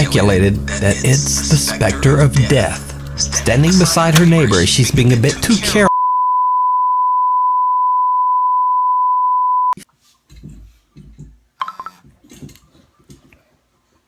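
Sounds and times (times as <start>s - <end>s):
faint clicks and rustling: 3.0s - 4.6s.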